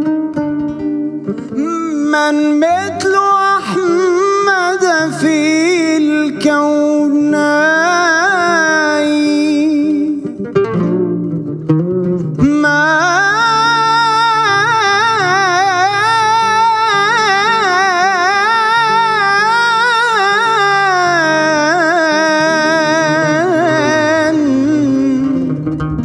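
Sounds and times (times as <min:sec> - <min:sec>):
ornamented melodic line with vibrato: 0:08.4 - 0:26.0
low accompaniment: 0:21.0 - 0:26.0.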